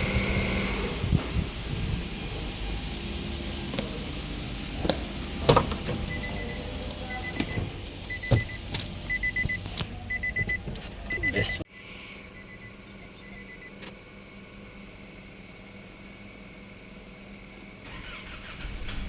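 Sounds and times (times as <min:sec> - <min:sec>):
short electronic beeps: 0:06.1 - 0:13.7.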